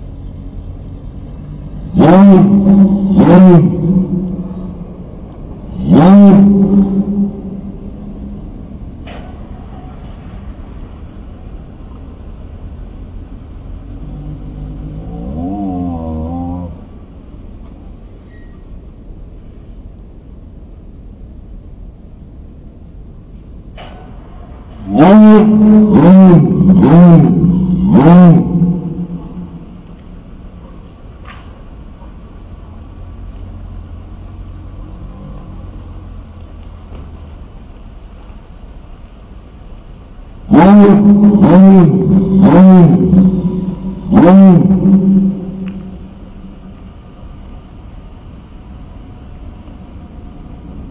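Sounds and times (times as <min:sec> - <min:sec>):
low steady tone: 0:00.0 - 0:18.7, 0:39.0 - 0:50.9
road traffic rumble: 0:00.0 - 0:50.9.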